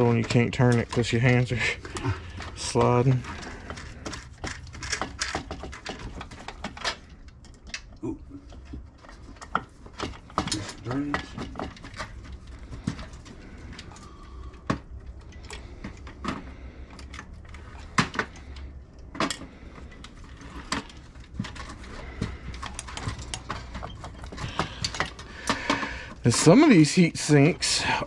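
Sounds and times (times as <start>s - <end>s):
metal parts clinking: 0.0s - 8.0s, 15.0s - 28.0s
hand tools being handled: 0.0s - 28.0s.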